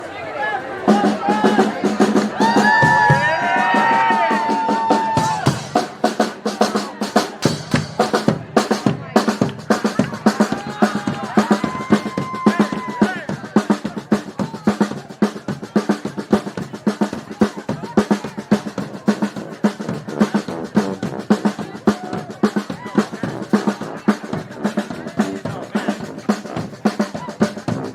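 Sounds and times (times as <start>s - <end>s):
snare and bass drum groove: 0.9s - 27.9s
brass horns: 17.9s - 27.9s.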